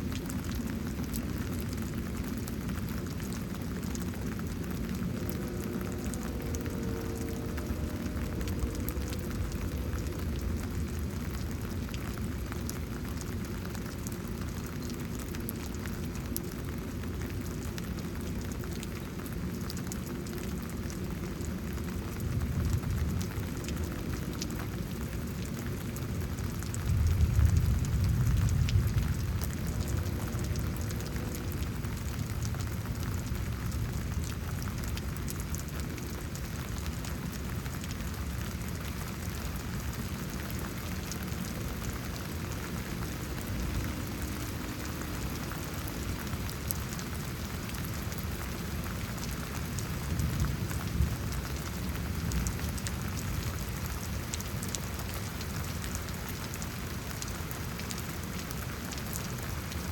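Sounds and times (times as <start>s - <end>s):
steady rain falling: 0.0s - 59.9s
distant thunder rumble: 0.1s - 13.1s, 22.4s - 34.7s.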